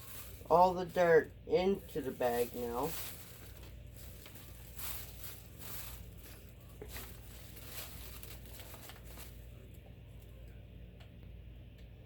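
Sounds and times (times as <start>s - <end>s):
plastic bag rustling and crinkling: 0.0s - 10.6s.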